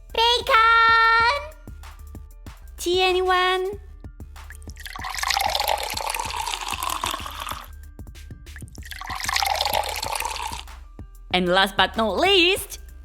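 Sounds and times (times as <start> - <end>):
background music with steady beat: 0.0 - 13.0
tea pouring and splashing: 4.3 - 10.8.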